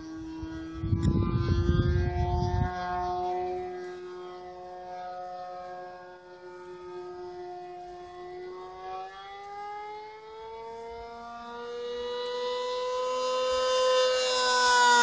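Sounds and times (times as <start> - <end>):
model plane engine flying: 0.0 - 15.0.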